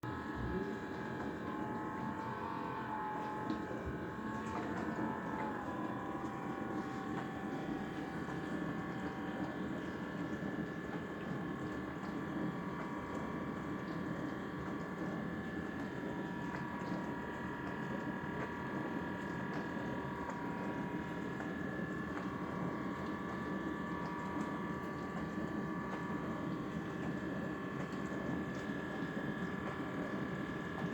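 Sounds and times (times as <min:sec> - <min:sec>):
dishwasher water churning: 0:00.5 - 0:30.9.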